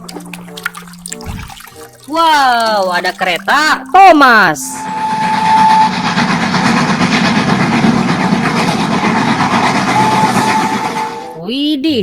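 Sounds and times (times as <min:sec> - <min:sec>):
train rumbling and rattling: 0:04.8 - 0:11.6.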